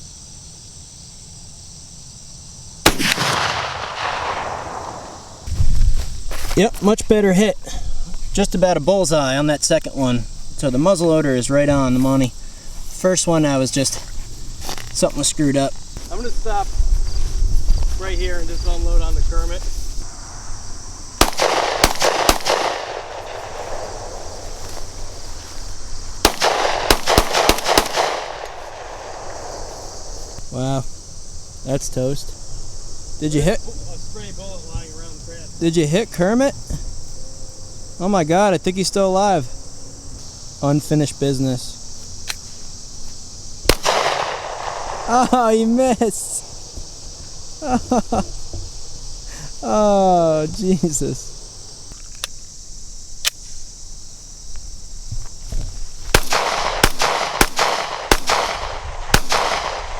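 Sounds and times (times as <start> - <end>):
crickets chirring: 0.0 - 59.9
rifle shot with rolling report: 2.8 - 5.5, 21.2 - 24.4, 26.2 - 30.3, 43.7 - 45.3, 56.1 - 59.9
gunshots with echo: 2.9 - 5.4, 21.2 - 24.3, 26.3 - 29.7.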